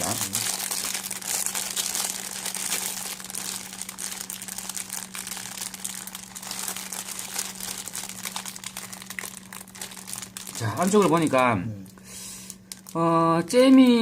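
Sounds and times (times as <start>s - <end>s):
bun tearing by hand: 0.0s - 11.1s
low electrical hum: 0.0s - 14.0s
plastic wrapper crinkling: 0.0s - 14.0s.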